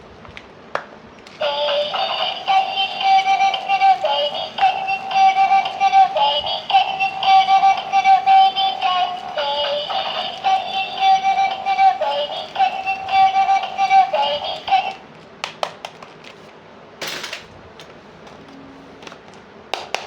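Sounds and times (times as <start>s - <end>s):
high singing-like voice: 1.3s - 15.1s.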